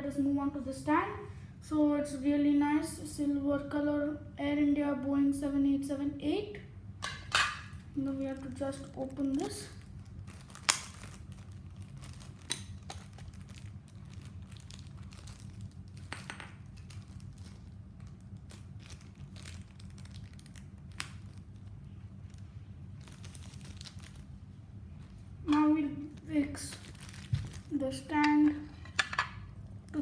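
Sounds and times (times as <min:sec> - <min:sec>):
plastic packaging crinkling: 0:07.6 - 0:25.3, 0:26.0 - 0:30.0.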